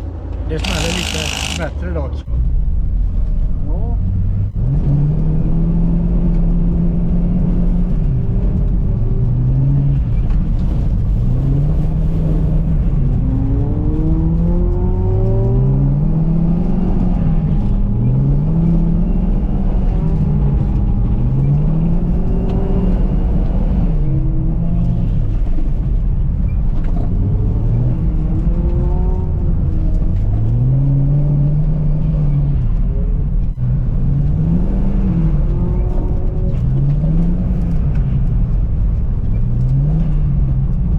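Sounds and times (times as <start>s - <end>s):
car engine revving: 0.0s - 2.1s.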